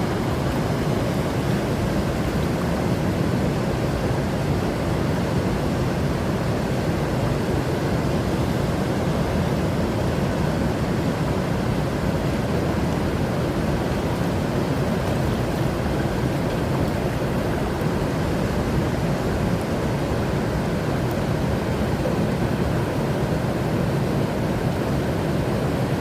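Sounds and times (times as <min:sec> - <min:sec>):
river water rushing: 0:00.0 - 0:26.0.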